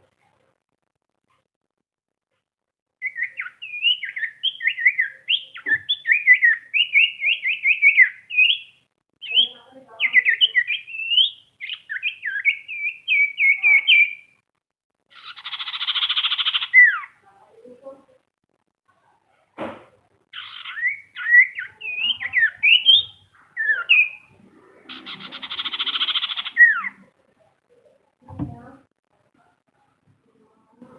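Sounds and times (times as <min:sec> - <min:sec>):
bird warbling whistled notes: 0:20.4 - 0:24.3, 0:24.9 - 0:27.0.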